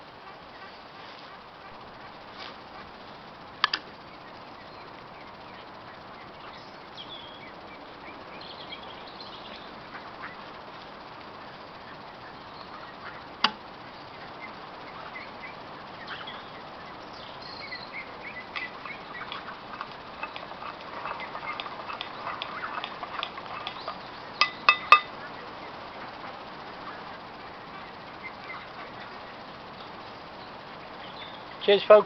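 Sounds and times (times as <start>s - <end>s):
kettle boiling hiss: 0.0s - 32.0s
sharp clinks: 24.4s - 25.1s.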